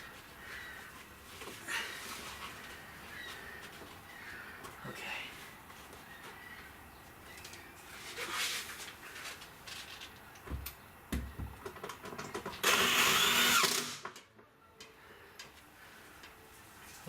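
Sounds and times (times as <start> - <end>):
power drill driving screw: 12.6 - 14.1.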